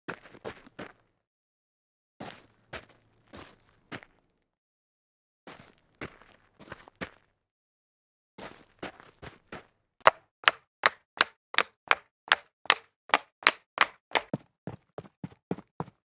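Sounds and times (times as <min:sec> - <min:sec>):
jogging footsteps on concrete: 0:10.1 - 0:16.0.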